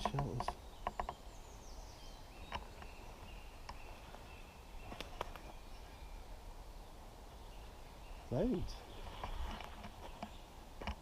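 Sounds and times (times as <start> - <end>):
sharp clicks: 0.0 - 1.2
faint distant birdsong: 0.0 - 11.0.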